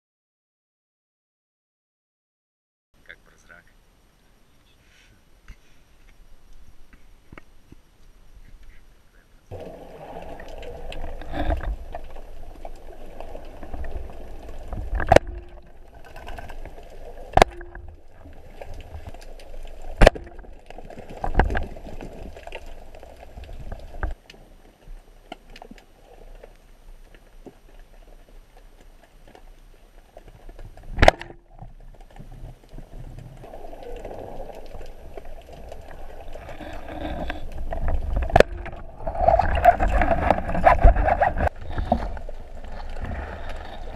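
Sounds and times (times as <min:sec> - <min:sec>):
water gurgling and sloshing: 0:09.5 - 0:43.9.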